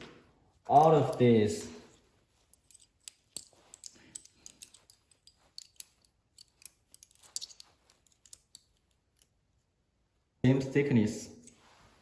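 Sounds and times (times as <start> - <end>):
metal keys clicking and clinking: 0.7 - 1.4, 2.5 - 9.3.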